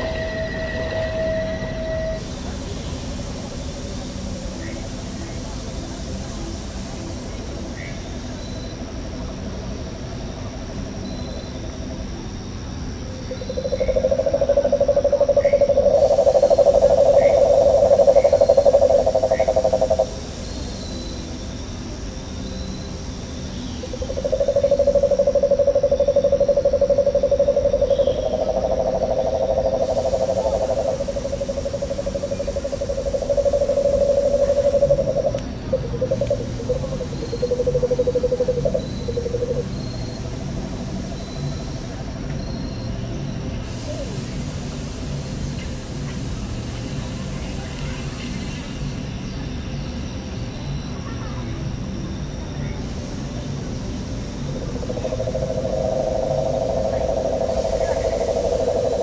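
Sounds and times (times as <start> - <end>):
animal pulsed trill: 13.3 - 21.4, 22.5 - 42.9, 54.3 - 59.0.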